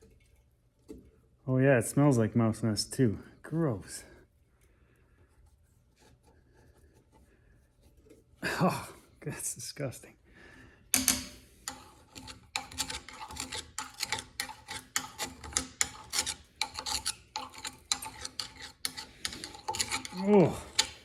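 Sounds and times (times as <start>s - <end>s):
scraping inside a drill press: 11.0s - 21.0s.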